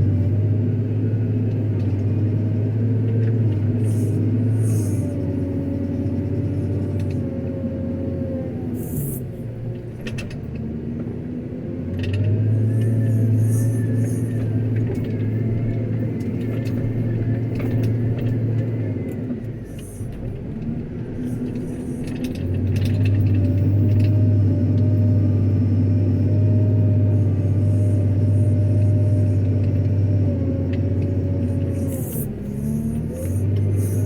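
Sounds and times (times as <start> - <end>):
wheel loader diesel engine: 0.0 - 34.0
thin wavering whine: 12.2 - 20.2, 26.2 - 34.0.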